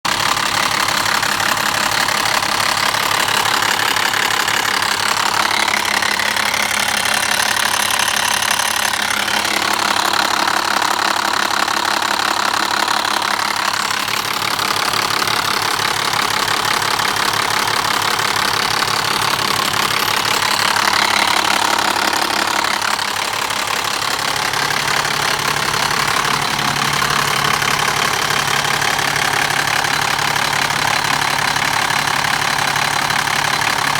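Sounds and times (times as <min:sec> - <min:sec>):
diesel engine running: 0:00.0 - 0:33.9
fast engine rattle: 0:00.0 - 0:33.9.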